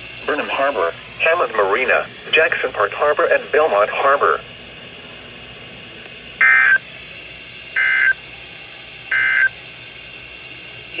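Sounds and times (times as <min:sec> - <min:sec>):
radio hiss: 0:00.0 - 0:07.0, 0:07.8 - 0:08.2, 0:09.1 - 0:09.5
buzzy data bursts: 0:06.4 - 0:07.0, 0:07.7 - 0:08.2, 0:09.1 - 0:09.5.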